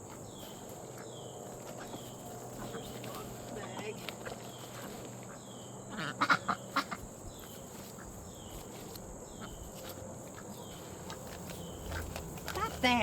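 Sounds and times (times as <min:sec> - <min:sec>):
bird chirping: 0:00.0 - 0:13.0
duck quacking: 0:05.3 - 0:07.0.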